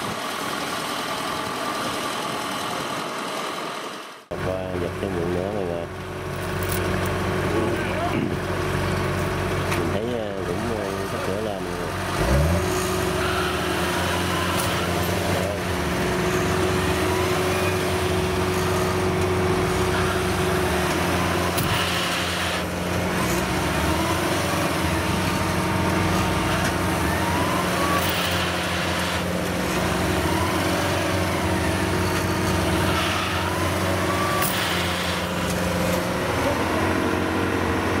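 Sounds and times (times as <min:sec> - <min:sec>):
heavy machine engines revving: 0:00.0 - 0:38.0
short rising whines: 0:12.1 - 0:38.0.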